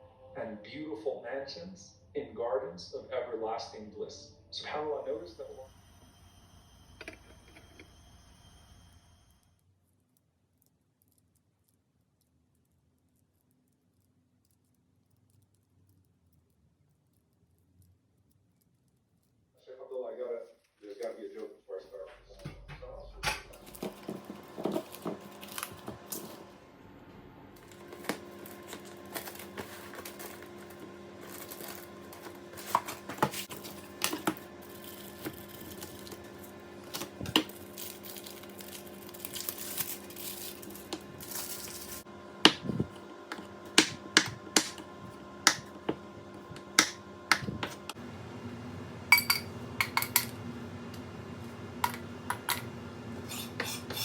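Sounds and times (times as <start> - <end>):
dishes and utensils clinking: 49.2 - 50.3.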